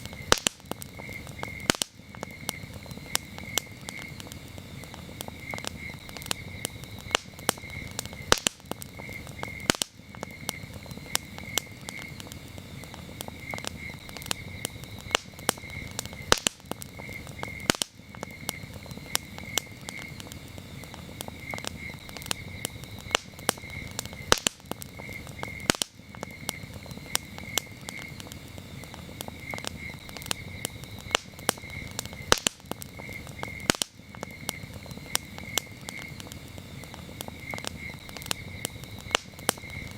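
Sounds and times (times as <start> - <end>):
campfire crackling: 0.0 - 39.9
crickets chirping: 0.0 - 39.9
sharp fire pops: 0.0 - 39.9.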